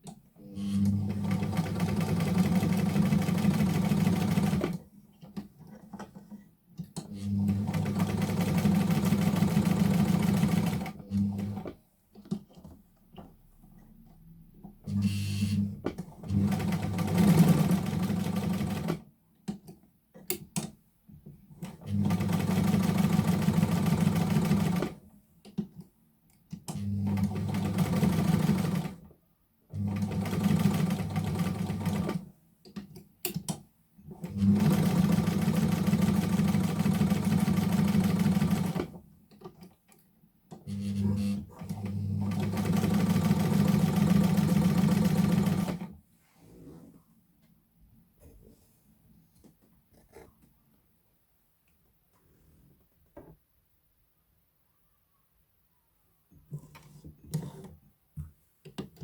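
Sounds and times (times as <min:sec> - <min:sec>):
sewing machine stitching: 0:00.6 - 0:04.8, 0:07.0 - 0:11.7, 0:14.9 - 0:19.0, 0:21.6 - 0:25.0, 0:26.7 - 0:29.0, 0:29.8 - 0:32.3, 0:34.1 - 0:39.0, 0:40.6 - 0:45.9.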